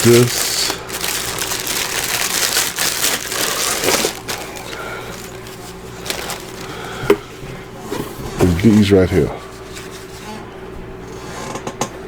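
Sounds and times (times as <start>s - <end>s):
packaging rustling and crinkling: 0.0s - 7.4s.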